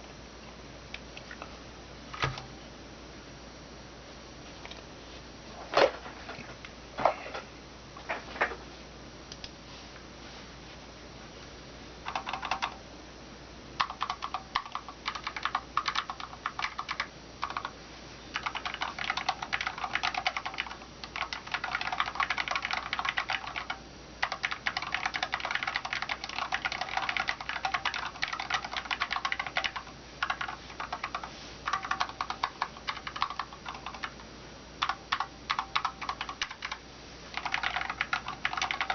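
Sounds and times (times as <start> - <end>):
typing on mechanical keyboard: 12.1 - 12.8, 13.8 - 17.7, 18.3 - 34.2, 34.8 - 36.8, 37.4 - 38.9.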